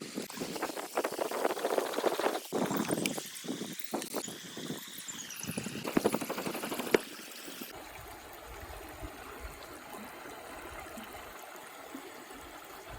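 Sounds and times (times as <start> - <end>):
steady cooking hiss: 0.0 - 7.8
rapid clattering and crackling: 5.8 - 7.1.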